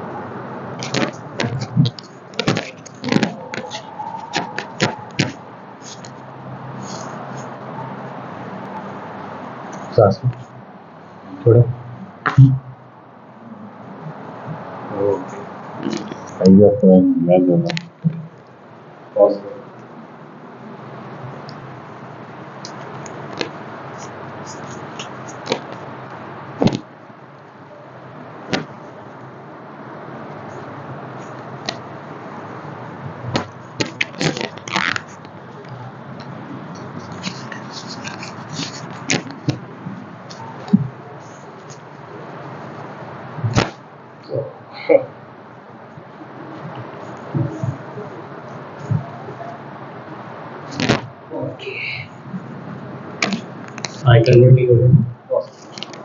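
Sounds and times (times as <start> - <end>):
steady background hiss: 0.0 - 56.0
steady low hum: 0.0 - 56.0
neck joints cracking: 0.8 - 6.1, 33.3 - 39.6.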